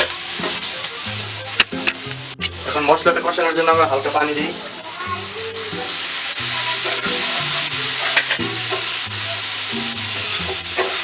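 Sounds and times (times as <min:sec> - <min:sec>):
spoon scraping a pan: 0:00.0 - 0:04.8, 0:05.6 - 0:11.0
background music with low notes: 0:00.0 - 0:11.0
masala sizzling in hot oil: 0:00.0 - 0:11.0.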